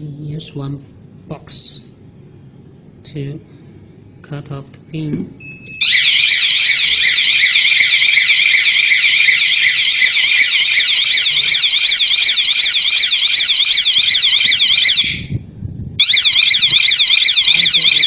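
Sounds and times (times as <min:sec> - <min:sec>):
warbling electronic alarm siren: 0:05.4 - 0:18.0.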